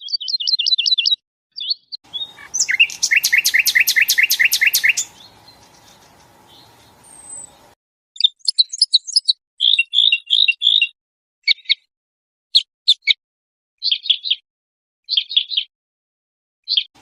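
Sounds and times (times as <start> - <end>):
songbird trilling: 0.0 - 11.8.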